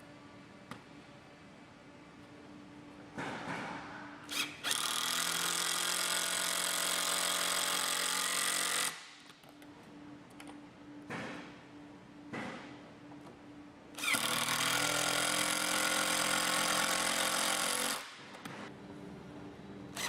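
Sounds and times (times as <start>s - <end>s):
power drill driving screws: 14.0s - 18.2s.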